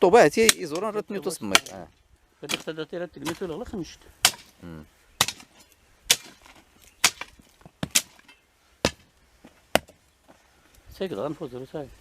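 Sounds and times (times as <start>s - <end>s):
hand tool chopping roots: 0.4s - 1.8s, 2.4s - 4.6s, 5.2s - 9.1s, 9.7s - 10.0s.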